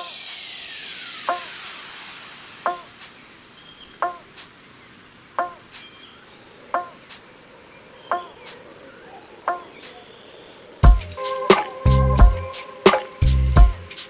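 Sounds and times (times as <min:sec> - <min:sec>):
sharp high tick: 0:00.0 - 0:03.2
high insect hum: 0:00.0 - 0:14.0.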